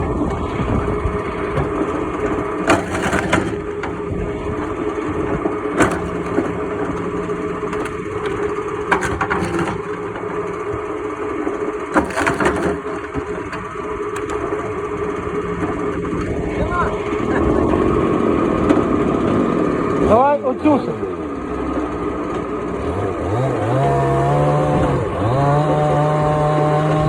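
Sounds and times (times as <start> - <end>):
engine running: 0.0 - 27.0
wood crushing and splintering: 0.0 - 27.0
sharp wood cracks: 1.5 - 11.2, 11.8 - 16.3.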